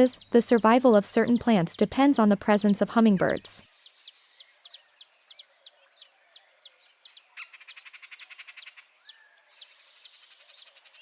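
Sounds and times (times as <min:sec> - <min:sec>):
bird chip notes: 0:00.0 - 0:03.6
buzzy bird trill: 0:00.0 - 0:05.4.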